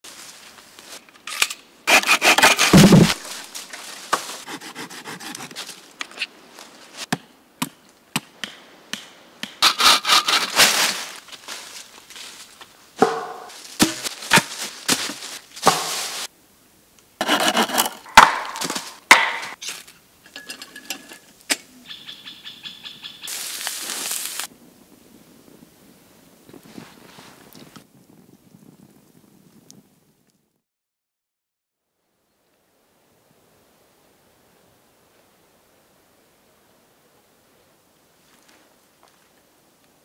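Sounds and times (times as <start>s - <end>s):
hand saw cutting wood: 1.9s - 3.3s, 4.2s - 5.8s, 9.6s - 10.9s, 15.6s - 16.2s, 17.2s - 19.6s
single knocks: 13.0s - 14.0s.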